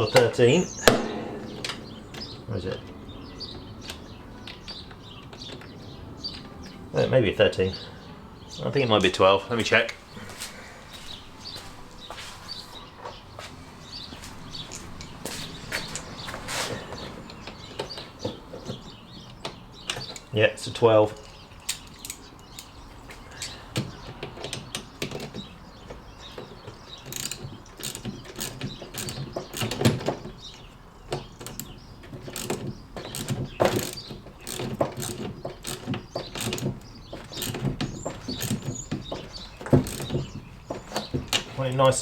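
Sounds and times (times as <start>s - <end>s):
ratchet wrench clicking: 32.4s - 36.6s.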